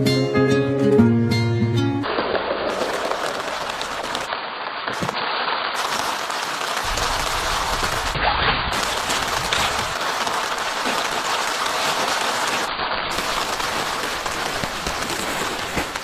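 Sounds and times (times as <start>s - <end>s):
guitar music: 0.0s - 2.1s
heavy rain falling: 2.0s - 16.0s.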